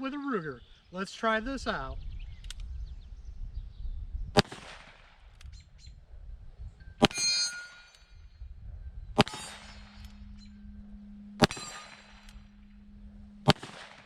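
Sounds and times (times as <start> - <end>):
revolver shots with ringing tail: 6.8 - 8.4, 9.0 - 14.0
revolver cocking: 6.9 - 8.2, 9.2 - 14.0.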